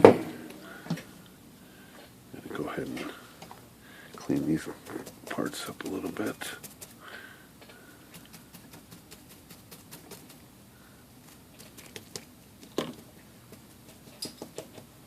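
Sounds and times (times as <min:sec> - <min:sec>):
small parts clicking and tapping: 0:11.7 - 0:14.9.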